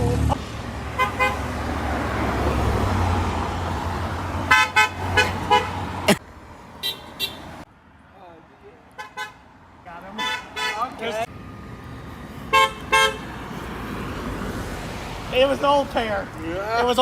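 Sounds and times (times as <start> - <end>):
low traffic rumble: 0.0 - 17.0
vehicle horns tooting: 0.9 - 1.6, 4.4 - 6.2, 6.8 - 7.6, 8.9 - 9.5, 10.1 - 11.3, 12.5 - 13.4.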